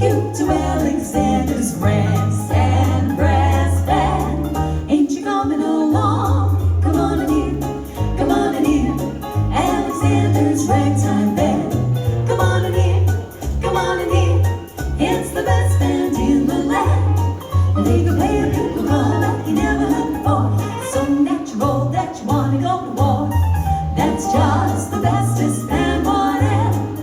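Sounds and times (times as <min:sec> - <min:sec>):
close-harmony vocal group singing: 0:00.0 - 0:27.0.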